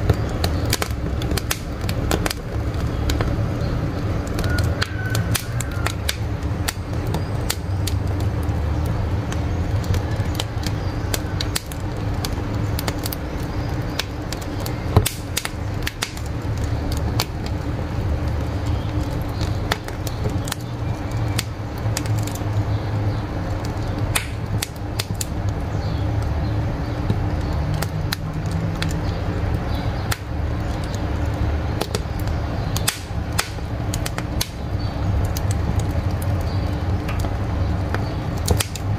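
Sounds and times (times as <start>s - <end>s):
low fire rumble: 0.0s - 38.9s
wood fire crackling and popping: 0.0s - 38.9s.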